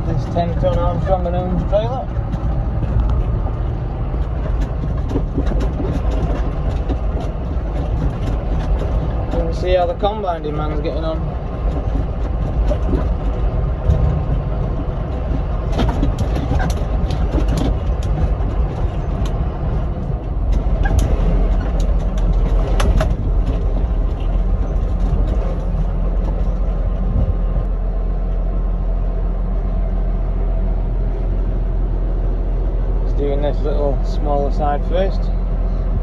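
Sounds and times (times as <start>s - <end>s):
sharp clatters and knocks: 0.0s - 27.7s
tractor engine drone: 0.0s - 36.0s.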